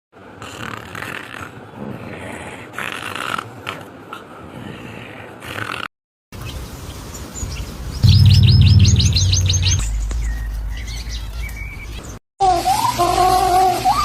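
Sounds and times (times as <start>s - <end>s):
songbird chirping: 6.5s - 12.2s
loud low hum: 8.0s - 11.4s.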